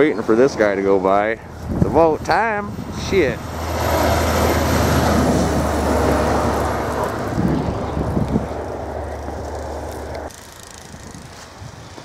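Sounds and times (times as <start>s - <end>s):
vehicle driving past on snow: 3.5s - 10.3s.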